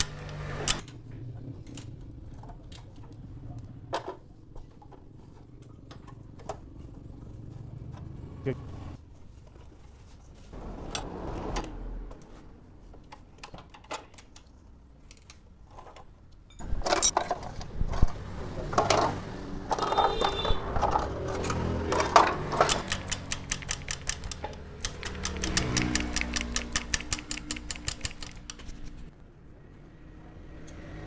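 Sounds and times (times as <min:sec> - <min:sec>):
mechanical clicking and clattering: 0:00.0 - 0:01.0, 0:21.2 - 0:29.1.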